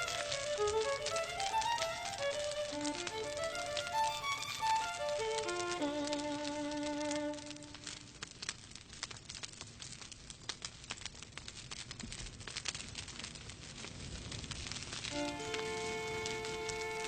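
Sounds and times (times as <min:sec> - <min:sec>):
violin music: 0:00.0 - 0:08.0, 0:15.1 - 0:17.0
wood fire crackling: 0:00.0 - 0:17.0.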